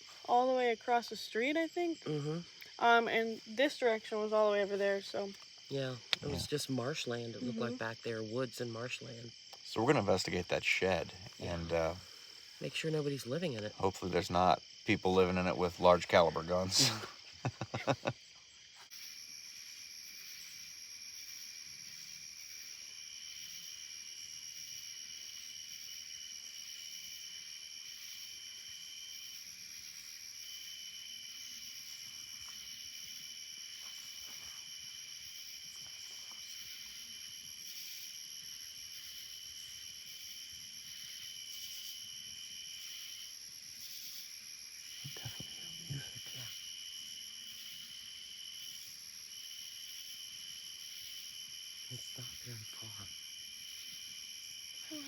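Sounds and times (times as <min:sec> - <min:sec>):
night insects trilling: 0:00.0 - 0:55.0.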